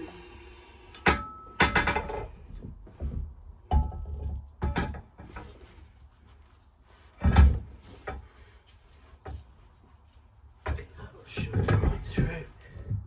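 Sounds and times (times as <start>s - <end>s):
knocks and clunks of parts handled: 1.0s - 6.0s, 7.1s - 9.5s.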